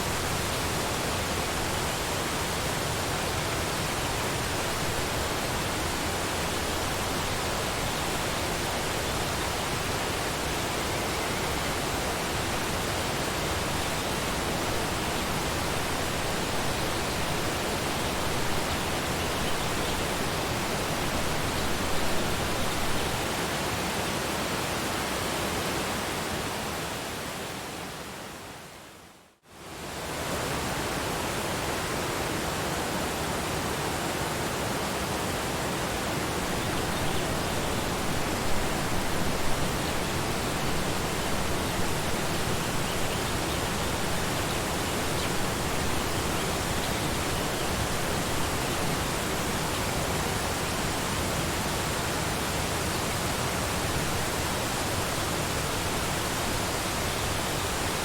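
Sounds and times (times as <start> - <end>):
waterfall roaring: 30.2 - 58.0.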